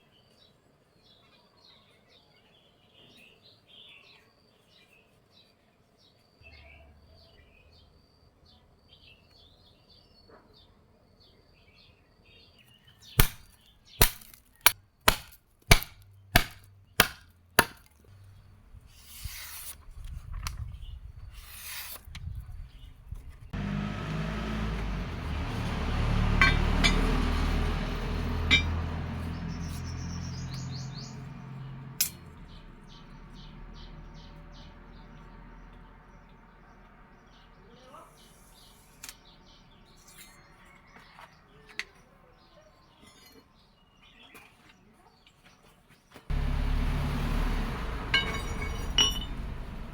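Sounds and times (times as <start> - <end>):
birds chirping: 22.7 - 44.9, 46.3 - 49.9
hammer blows on steel: 24.3 - 28.9.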